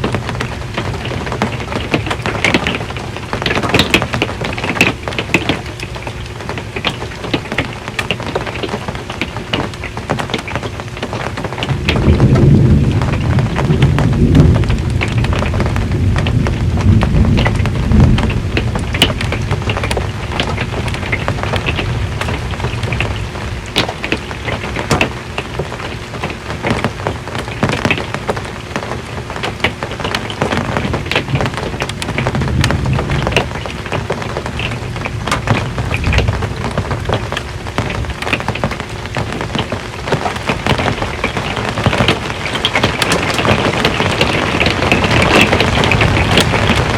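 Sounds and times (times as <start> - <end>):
rain drumming on a metal roof: 0.0 - 46.9
thunder rumbling: 11.0 - 46.9.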